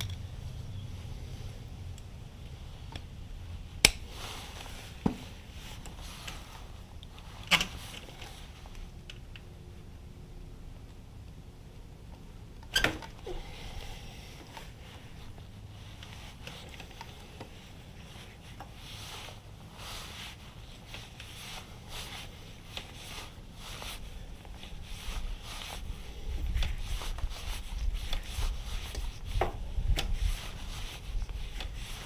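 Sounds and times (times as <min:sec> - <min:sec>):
low hum: 0:00.0 - 0:07.4.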